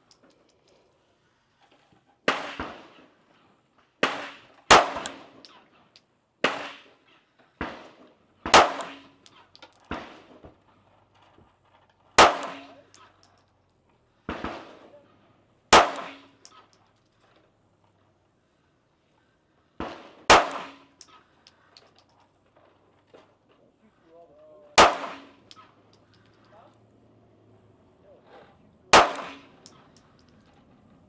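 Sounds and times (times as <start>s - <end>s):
gunshots echoing: 2.3s - 3.0s, 4.0s - 5.4s, 6.4s - 6.9s, 7.6s - 9.2s, 12.2s - 12.9s, 14.3s - 14.9s, 15.7s - 16.5s, 19.8s - 21.0s, 24.8s - 25.6s, 28.9s - 29.8s.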